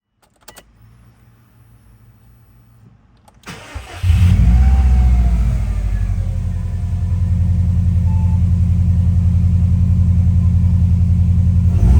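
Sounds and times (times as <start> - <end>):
car engine cranking and starting: 3.2 - 11.9.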